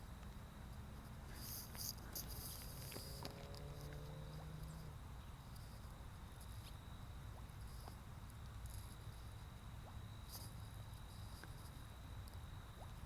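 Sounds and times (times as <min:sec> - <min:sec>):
steady high buzz: 0:00.0 - 0:13.0.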